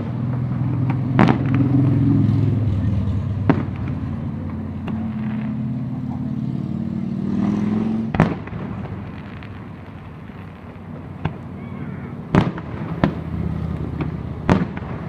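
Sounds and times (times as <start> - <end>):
vehicle engine running: 0.0 - 9.8
fireworks bangs: 0.0 - 15.0.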